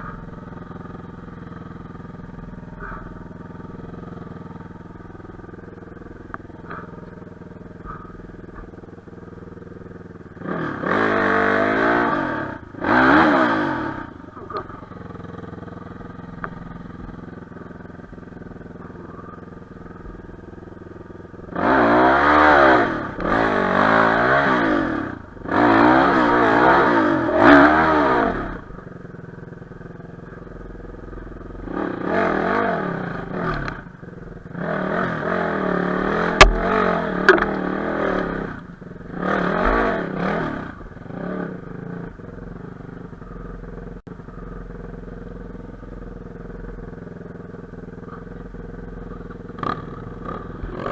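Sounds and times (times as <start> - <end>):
motorcycle engine revving: 0.0 - 50.9
sharp knocks: 36.4 - 37.6.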